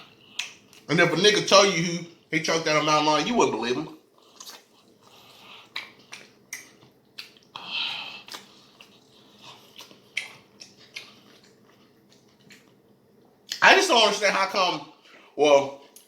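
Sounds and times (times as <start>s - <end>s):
person chewing and smacking food: 0.0s - 0.9s, 4.1s - 13.6s, 15.8s - 16.0s.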